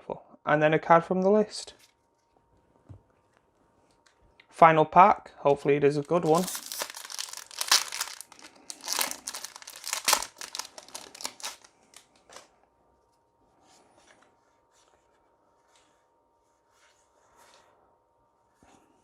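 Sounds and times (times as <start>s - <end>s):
foil wrapper crinkling and tearing: 6.0s - 12.5s.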